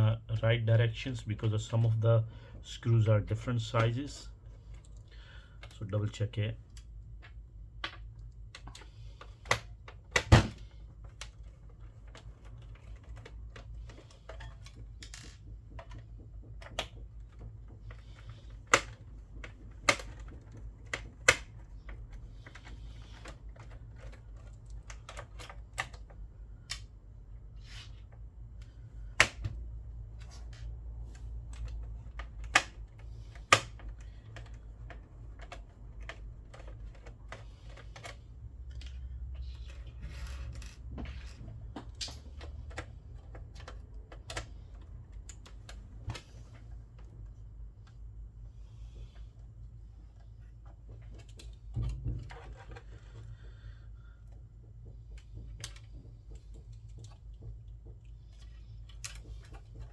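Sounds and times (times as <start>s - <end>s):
steady low hum: 0.0s - 59.9s
clicks and taps of parts handled: 54.2s - 59.9s.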